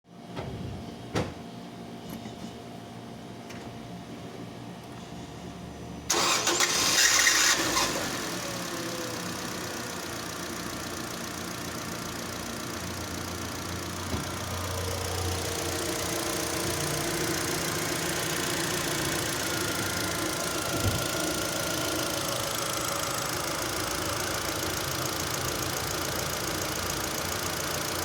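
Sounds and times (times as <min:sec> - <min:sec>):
car engine idling: 0:06.1 - 0:28.0.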